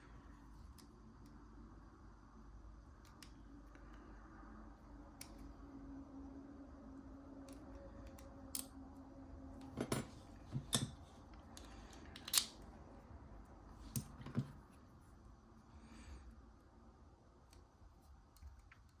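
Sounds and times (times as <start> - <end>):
faint steady hum: 0.0 - 19.0
metallic clicks handling padlock: 8.0 - 8.7, 11.6 - 12.6.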